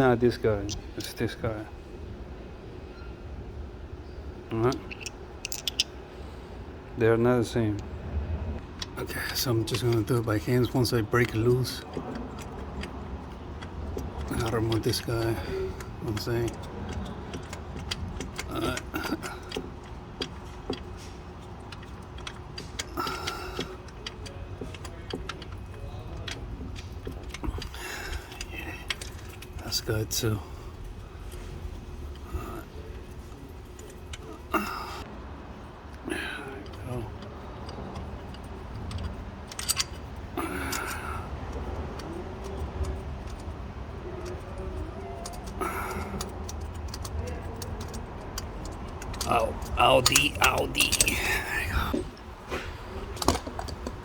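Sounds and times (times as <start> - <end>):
steady low hum: 0.0 - 54.0
hand tools clicking on metal: 4.5 - 6.0, 8.6 - 35.1, 35.9 - 54.0
metallic clicks of hand tools: 4.7 - 5.9, 36.2 - 43.6, 44.2 - 52.2.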